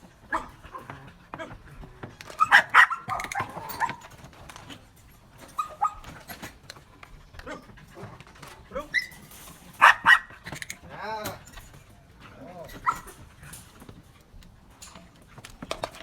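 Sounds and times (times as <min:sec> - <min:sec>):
puppy barking and yipping: 0:00.2 - 0:00.8, 0:02.3 - 0:04.1, 0:05.5 - 0:06.2, 0:08.9 - 0:10.4, 0:12.8 - 0:13.1.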